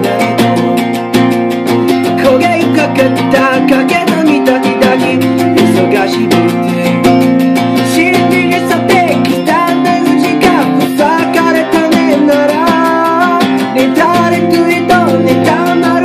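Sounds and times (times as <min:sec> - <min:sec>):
acoustic guitar strumming: 0:00.0 - 0:16.0
man singing: 0:00.0 - 0:16.0.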